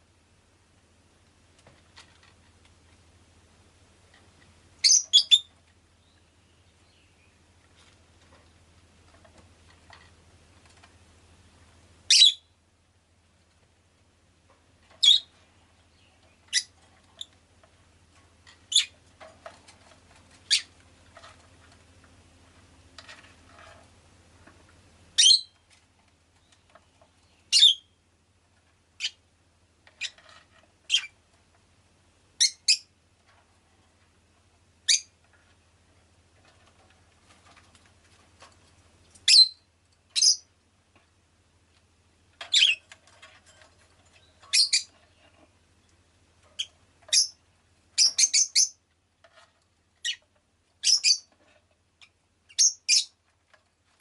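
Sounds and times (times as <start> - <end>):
bird chirping: 4.8 - 7.5, 12.1 - 12.5, 15.0 - 17.4, 18.7 - 19.0, 20.4 - 20.7, 25.2 - 25.6, 26.4 - 28.0, 29.0 - 29.2, 32.4 - 32.9, 34.8 - 35.1, 39.2 - 40.5, 42.4 - 43.0, 44.1 - 45.2, 46.6 - 47.4, 48.0 - 48.8, 50.0 - 50.2, 50.8 - 51.4, 52.0 - 53.2.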